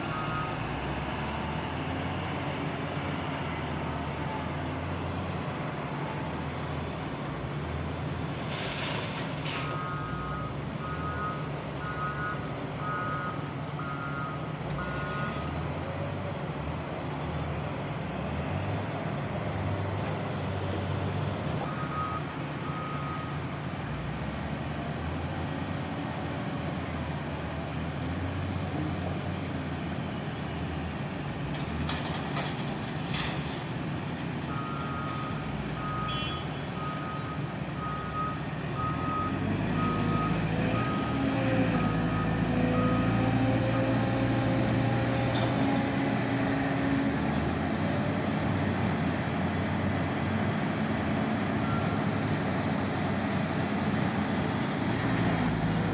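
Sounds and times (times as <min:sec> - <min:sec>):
reversing alarm beeping: 0:00.0 - 0:01.1, 0:09.6 - 0:15.5, 0:21.6 - 0:23.4, 0:34.5 - 0:41.2, 0:51.6 - 0:52.2
short hiss: 0:08.4 - 0:09.8.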